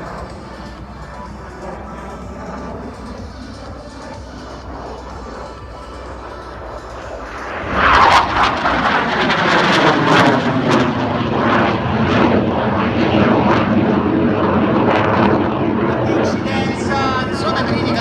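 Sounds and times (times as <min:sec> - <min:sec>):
jet flying past with whine: 0:00.0 - 0:18.0.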